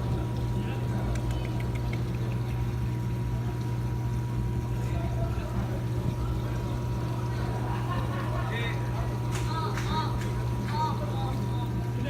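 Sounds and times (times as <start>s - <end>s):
low mechanical hum: 0.0s - 12.0s
faint ticks: 1.1s - 2.6s.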